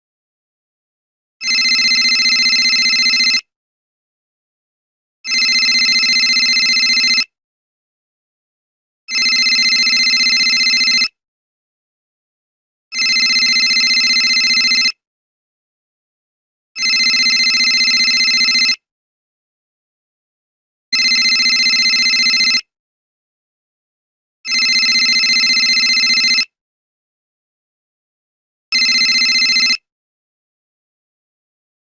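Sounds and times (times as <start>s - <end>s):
phone call tone: 1.4s - 3.4s, 5.3s - 7.3s, 9.1s - 11.1s, 13.0s - 14.9s, 16.8s - 18.8s, 21.0s - 22.6s, 24.5s - 26.5s, 28.8s - 29.8s.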